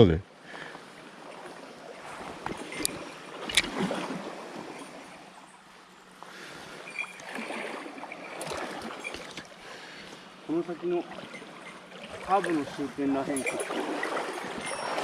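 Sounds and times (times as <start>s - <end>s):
river water rushing: 6.4s - 15.0s.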